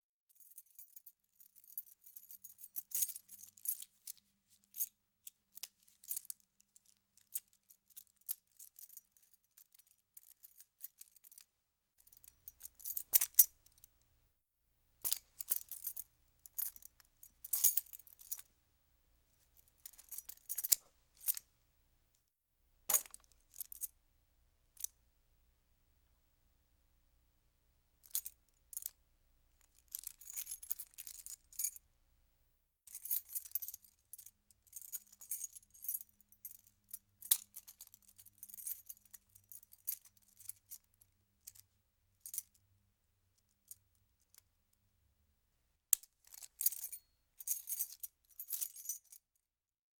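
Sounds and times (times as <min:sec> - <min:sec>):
metal keys jingling: 0:19.8 - 0:21.4.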